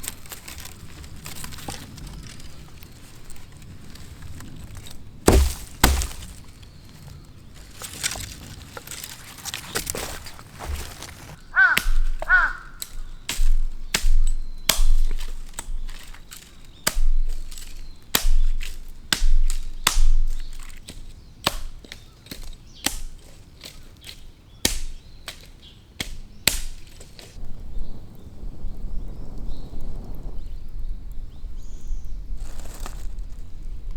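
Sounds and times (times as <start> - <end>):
firewood snapping and cracking: 0.0 - 27.5
crow cawing: 11.4 - 13.2.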